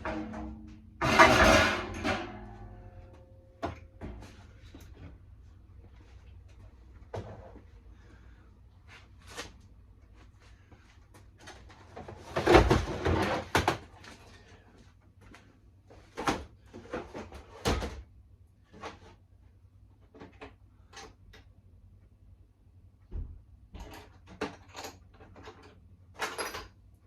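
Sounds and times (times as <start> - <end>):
clatter of parts and tools: 0.0 - 5.1, 23.7 - 26.9
knocks and rattling of parts: 0.0 - 7.7, 11.0 - 18.1, 23.0 - 27.0.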